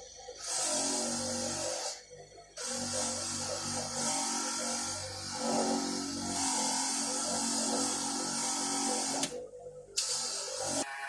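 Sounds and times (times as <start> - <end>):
motor-driven tool hissing: 2.6 - 9.3.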